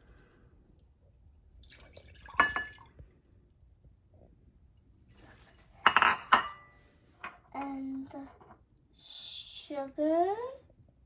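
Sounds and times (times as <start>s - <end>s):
milk pouring into a bowl: 1.5s - 5.2s
cup clinking against bowl: 2.3s - 2.9s, 5.9s - 6.7s.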